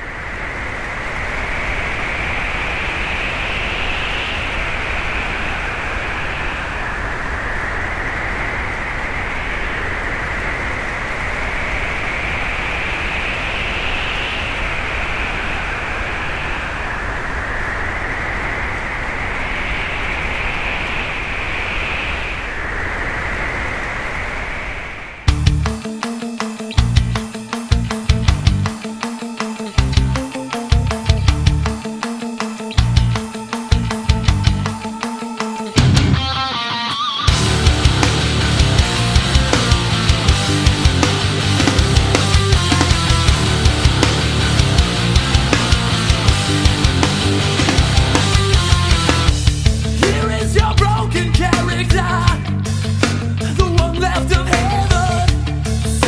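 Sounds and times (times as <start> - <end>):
wind buffeting microphone: 0.0 - 25.8
rock music with electric guitar: 25.3 - 56.0.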